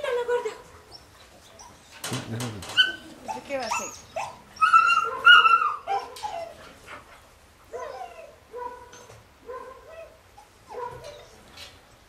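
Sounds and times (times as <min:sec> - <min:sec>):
puppy whining and yelping: 0:00.0 - 0:02.0, 0:02.7 - 0:06.8, 0:07.7 - 0:08.4, 0:09.9 - 0:11.4.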